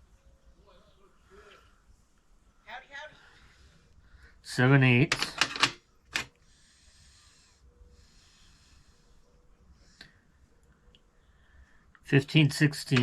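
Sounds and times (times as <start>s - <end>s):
faint breathing: 1.0s - 4.5s, 6.3s - 12.0s.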